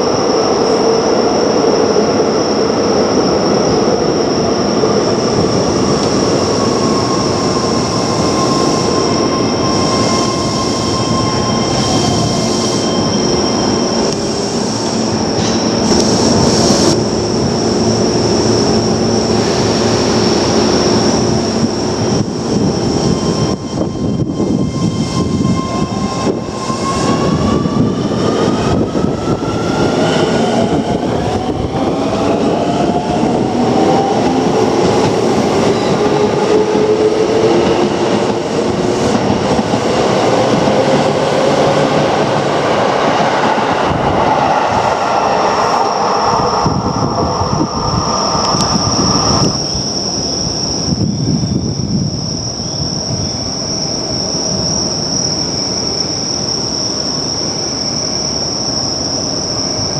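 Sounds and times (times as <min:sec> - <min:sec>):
high-pitched squeal: 0:02.4 - 0:17.0, 0:22.0 - 0:51.1.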